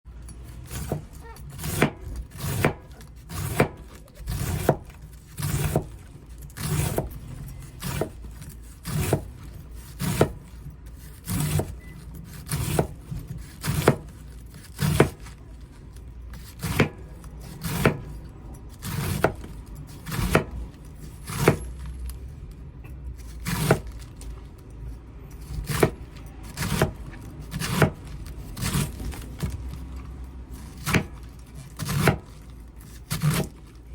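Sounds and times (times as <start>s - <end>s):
knife slicing cabbage on board: 0.6s - 6.0s, 6.6s - 15.4s, 16.4s - 18.2s, 18.8s - 21.9s, 23.2s - 24.1s, 25.5s - 33.7s.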